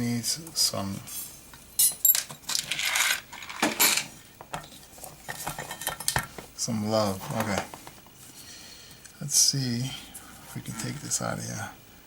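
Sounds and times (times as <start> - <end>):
metal parts clinking: 1.8 - 4.1.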